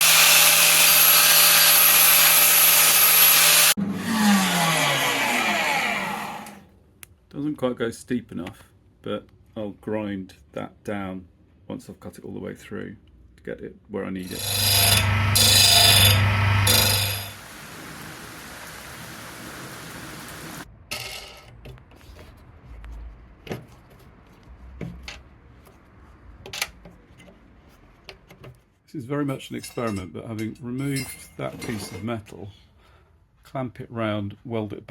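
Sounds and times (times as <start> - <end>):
angle grinder cutting steel: 0.0 - 6.6, 14.2 - 17.4
grinder spinning down whine: 3.2 - 6.6, 14.4 - 17.4
light metallic clinks and knocks: 29.5 - 32.1.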